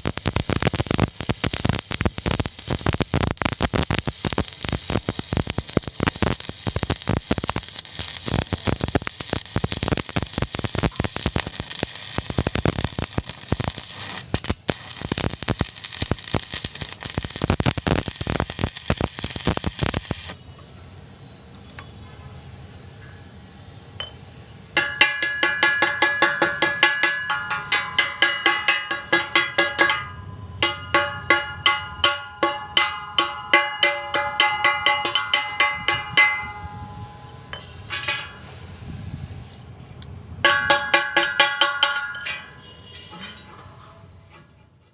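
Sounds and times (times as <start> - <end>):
welding arc crackling: 0.0 - 20.9, 23.4 - 44.4
hammer striking steel: 24.8 - 38.6, 40.4 - 44.4.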